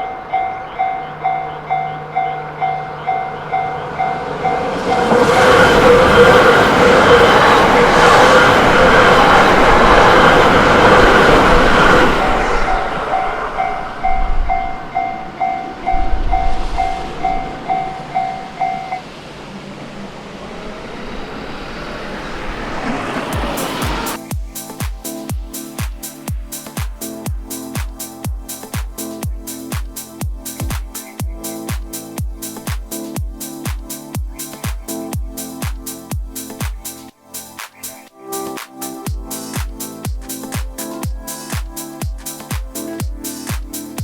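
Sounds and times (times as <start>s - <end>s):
level crossing warning bell: 0.0s - 19.2s
train rushing past: 0.0s - 44.0s.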